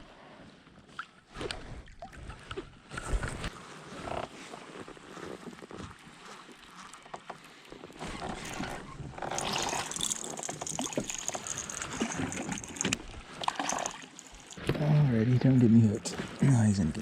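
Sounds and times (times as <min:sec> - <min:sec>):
water splashing and dripping: 0:09.3 - 0:14.7.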